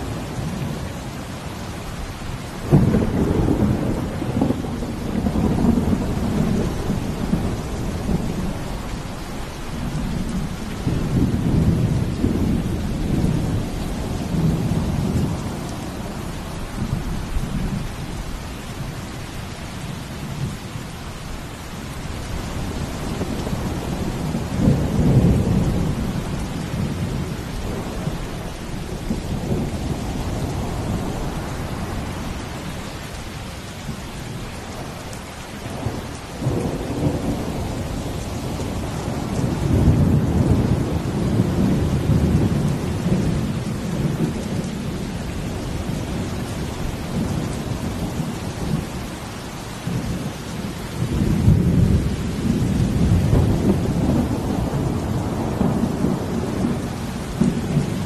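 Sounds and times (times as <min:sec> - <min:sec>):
steady rain: 0:00.0 - 0:58.0
deep low thunder rumbles: 0:02.6 - 0:08.8, 0:09.6 - 0:15.7, 0:22.7 - 0:32.6, 0:35.7 - 0:49.0, 0:49.9 - 0:58.0.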